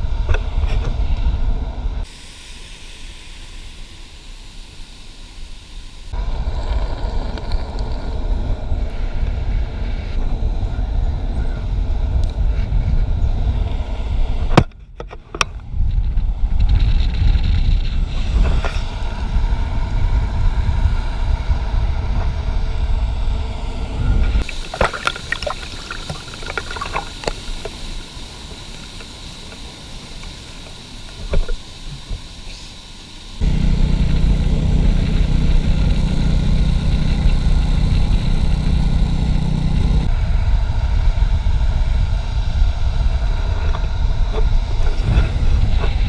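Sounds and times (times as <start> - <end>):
wind on microphone: 0.0 - 2.5, 6.1 - 32.5, 33.4 - 46.0
longboard wheels rumbling on asphalt: 6.1 - 14.5, 15.4 - 26.4, 33.4 - 46.0.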